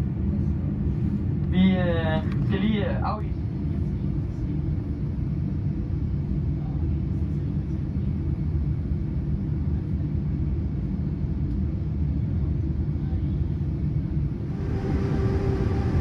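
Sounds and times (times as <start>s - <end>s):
airliner cabin rumble: 13.3s - 16.0s.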